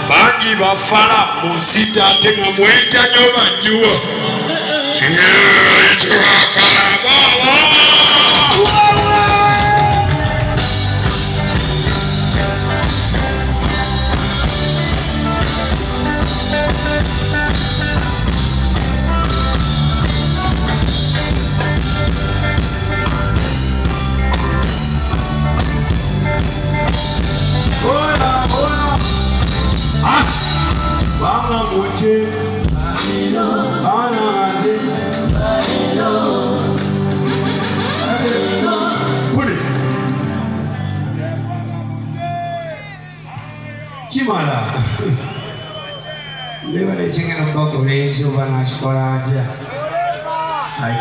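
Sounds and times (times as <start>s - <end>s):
band music with drum kit: 0.0s - 47.4s
person singing: 4.2s - 10.8s, 27.6s - 29.4s, 30.0s - 40.8s.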